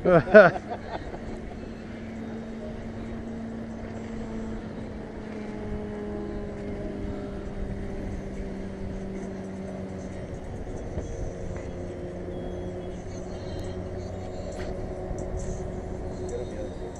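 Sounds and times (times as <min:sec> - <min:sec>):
engine humming drone: 0:00.0 - 0:16.9.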